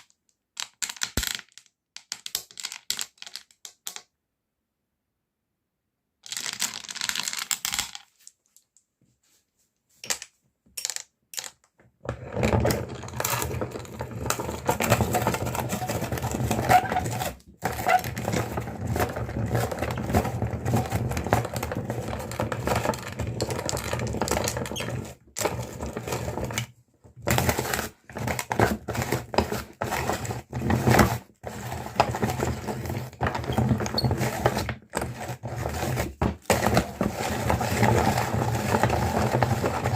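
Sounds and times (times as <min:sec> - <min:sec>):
candy crunching in grinder: 0:12.2 - 0:26.6, 0:27.3 - 0:39.9.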